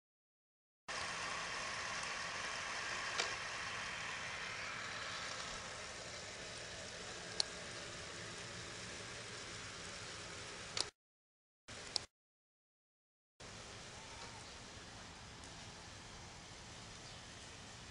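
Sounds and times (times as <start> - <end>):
toy tank hissing motor: 0.9 - 10.8
sharp clicks: 10.7 - 11.0, 11.9 - 12.1.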